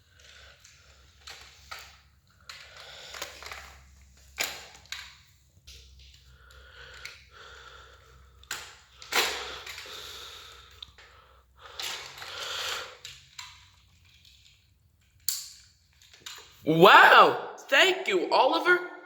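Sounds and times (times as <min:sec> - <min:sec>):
plastic toys clicking and knocking: 0:00.1 - 0:07.3, 0:11.7 - 0:16.6.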